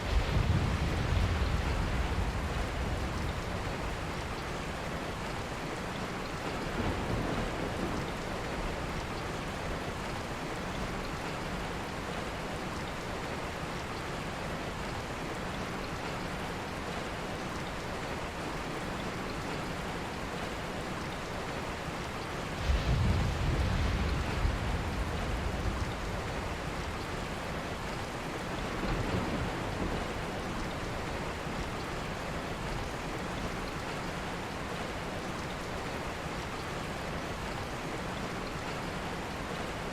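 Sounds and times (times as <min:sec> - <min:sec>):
low rumble of thunder: 0:00.0 - 0:11.0, 0:22.4 - 0:34.3
steady rain hiss: 0:00.0 - 0:39.9.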